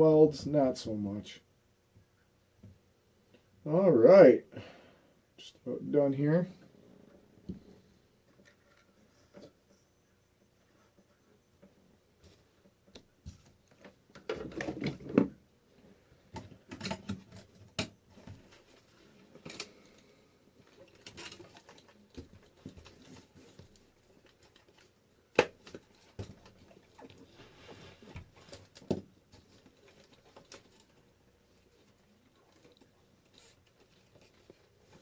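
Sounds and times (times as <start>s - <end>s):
small hard parts clicking and rattling: 20.6s - 25.0s.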